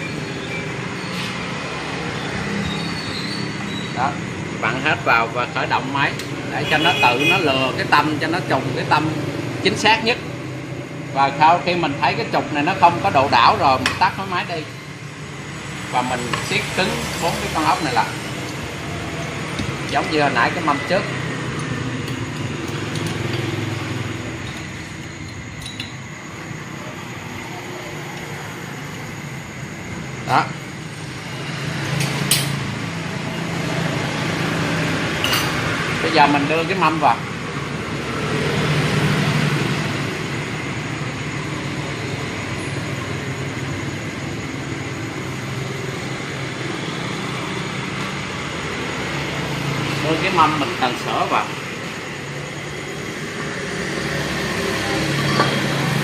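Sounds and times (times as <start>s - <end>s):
steady background hum: 0.0s - 38.2s
light metallic clinks: 24.4s - 26.0s.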